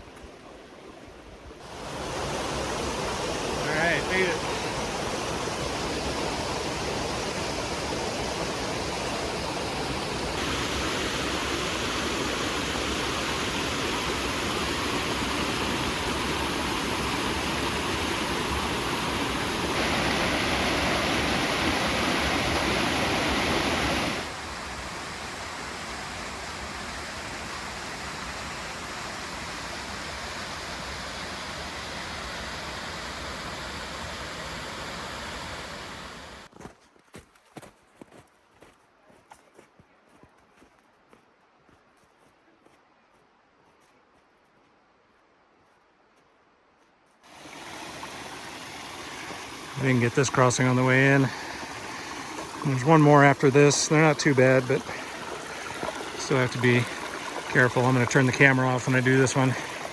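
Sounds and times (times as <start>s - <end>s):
waterfall rushing: 1.6s - 36.5s, 47.3s - 59.9s.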